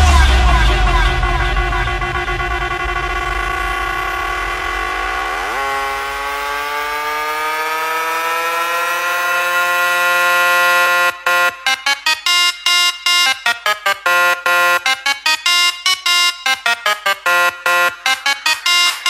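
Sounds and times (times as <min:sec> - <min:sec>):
rising synth chord: 0:00.0 - 0:11.8
stuttering synth stabs: 0:00.0 - 0:19.0.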